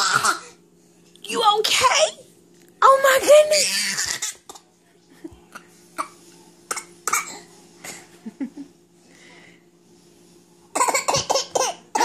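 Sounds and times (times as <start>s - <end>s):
baby fake coughing: 0.0s - 0.6s, 3.6s - 4.6s, 6.0s - 7.5s, 10.7s - 12.0s.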